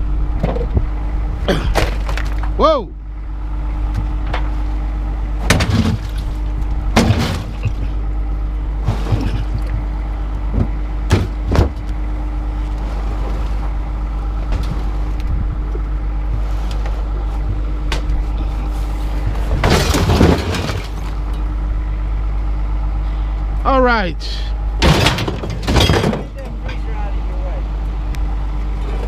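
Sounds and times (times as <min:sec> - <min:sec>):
vehicle engine running: 0:00.0 - 0:29.0
scrap metal clanking: 0:07.0 - 0:08.0, 0:08.8 - 0:09.7, 0:18.2 - 0:21.4, 0:24.8 - 0:26.9.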